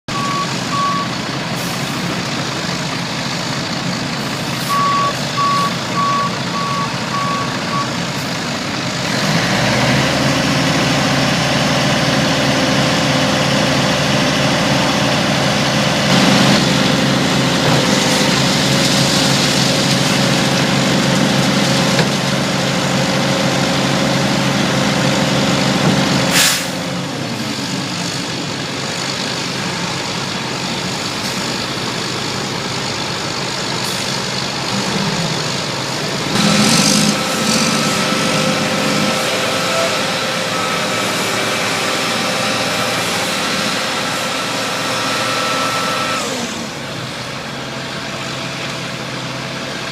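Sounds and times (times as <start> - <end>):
diesel engine running: 0.0 - 49.9
reversing alarm beeping: 0.1 - 1.2, 4.6 - 8.0.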